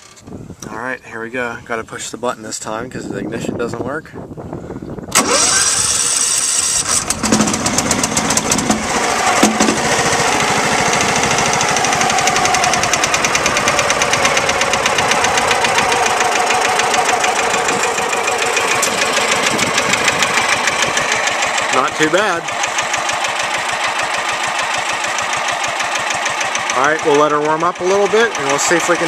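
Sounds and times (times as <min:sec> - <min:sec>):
tractor engine running: 0:05.1 - 0:29.0.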